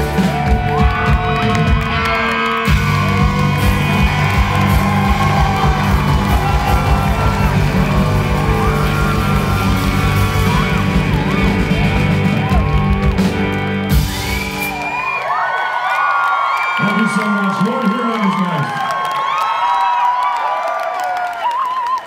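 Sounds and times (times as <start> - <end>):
live band playing: 0.0 - 15.2
crowd cheering and whooping: 0.0 - 22.0.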